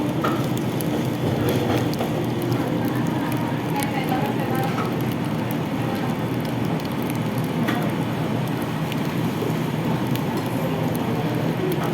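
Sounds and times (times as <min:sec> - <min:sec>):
bread crusts crackling: 0:00.0 - 0:11.9.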